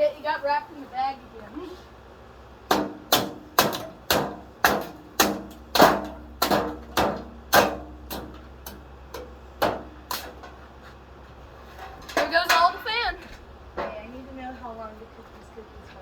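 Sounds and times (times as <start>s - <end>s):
hard knocks on a fan: 2.7s - 8.4s, 9.6s - 10.0s.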